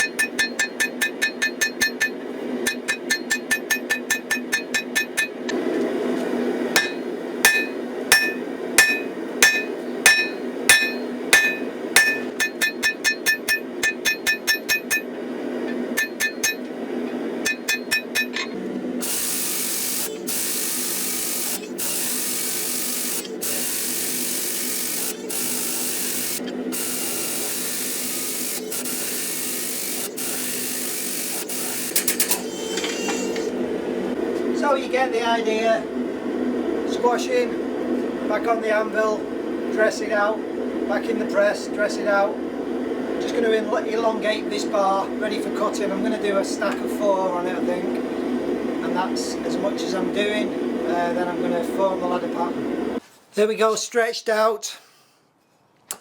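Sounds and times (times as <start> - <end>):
hammer blows on steel: 6.8 - 15.1
loud steady hiss: 19.0 - 33.6.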